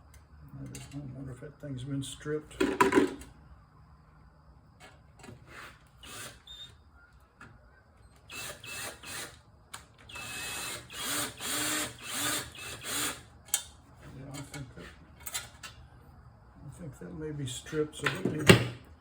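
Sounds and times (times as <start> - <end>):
power drill driving screw: 6.0 - 6.7, 8.2 - 9.4, 10.1 - 13.2.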